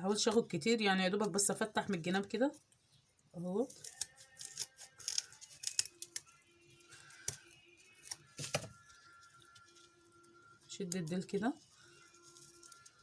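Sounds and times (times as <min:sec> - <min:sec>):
shrimp shells crackling: 0:03.8 - 0:06.4.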